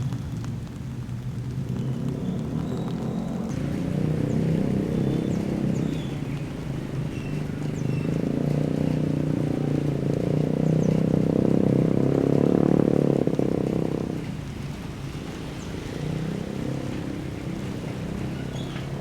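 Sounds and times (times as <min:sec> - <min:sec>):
engine droning: 0:00.0 - 0:19.0.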